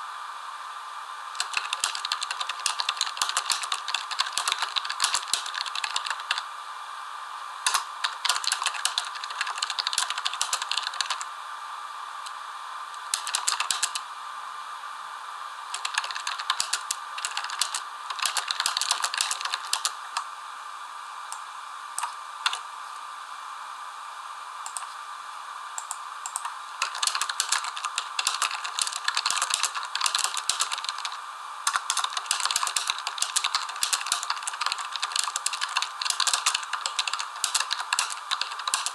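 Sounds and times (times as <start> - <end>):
faint steady hum: 0.0 - 38.9
rapid light clicking and rattling: 26.3 - 38.9.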